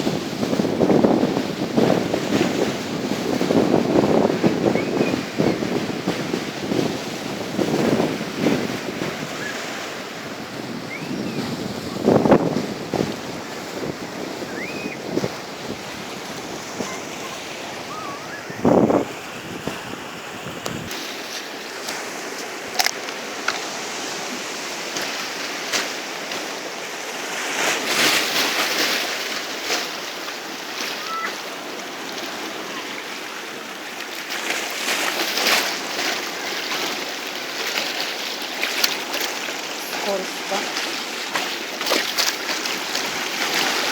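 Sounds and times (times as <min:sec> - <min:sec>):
wind buffeting microphone: 0:00.0 - 0:21.0
sea waves breaking on shore: 0:00.0 - 0:43.9.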